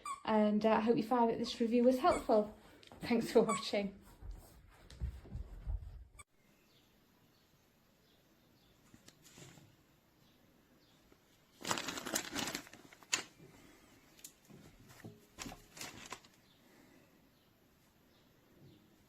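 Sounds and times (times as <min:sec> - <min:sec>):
rustling and scuffling: 0:02.0 - 0:06.2, 0:11.6 - 0:16.5.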